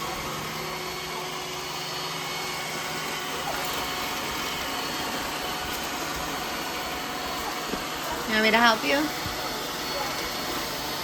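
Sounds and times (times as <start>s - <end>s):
robot vacuum cleaners whirring: 0.0s - 11.0s.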